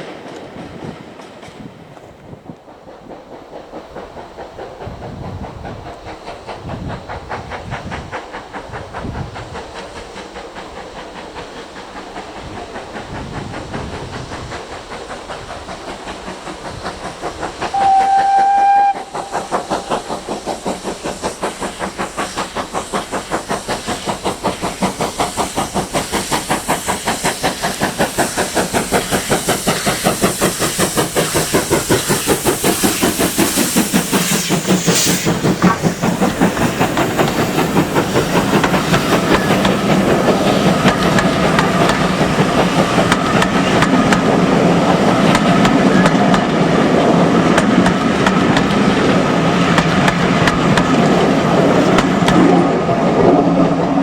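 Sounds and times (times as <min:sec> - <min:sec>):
steam locomotive chuffing: 0:00.0 - 0:54.0
steam hissing: 0:02.7 - 0:54.0
steam whistle blast: 0:17.7 - 0:19.5.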